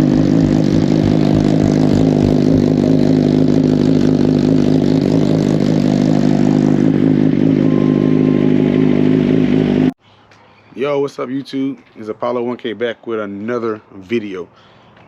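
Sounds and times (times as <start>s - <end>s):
motorcycle engine running steadily: 0.0s - 10.0s.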